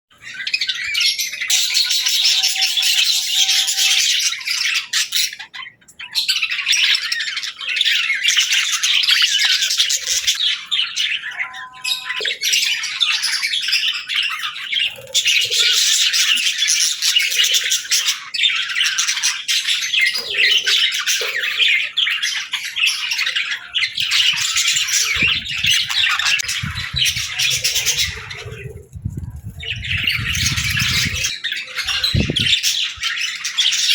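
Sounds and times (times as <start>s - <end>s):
budgerigar chattering and warbling: 0.2s - 33.9s.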